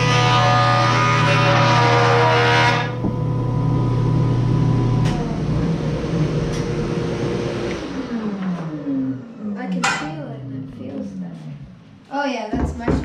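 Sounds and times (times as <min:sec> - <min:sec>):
wood planer motor running: 0:00.0 - 0:09.6.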